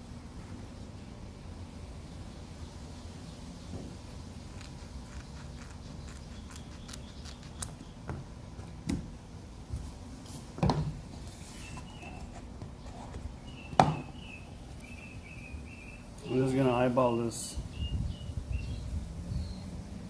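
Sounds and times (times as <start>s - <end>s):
handling knock: 13.7s - 14.1s.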